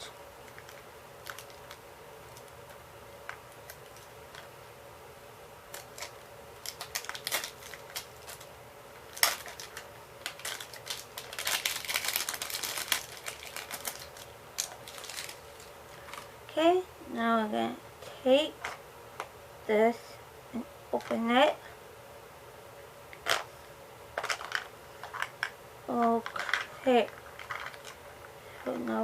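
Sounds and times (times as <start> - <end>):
faint steady hum: 0.0 - 29.0
plastic wrapping crinkling: 0.4 - 4.5, 5.7 - 8.5, 9.1 - 16.3, 26.1 - 28.0.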